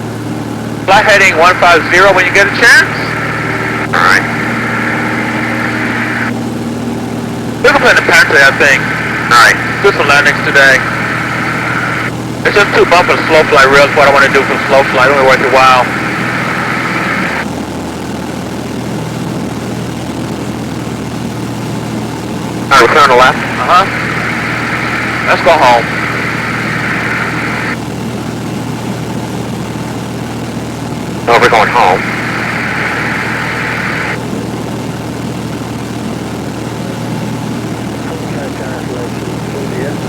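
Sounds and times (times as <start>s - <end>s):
aircraft engine and propeller drone: 0.0s - 40.0s
static hiss: 0.9s - 6.4s, 7.6s - 17.5s, 22.7s - 27.8s, 31.3s - 34.8s.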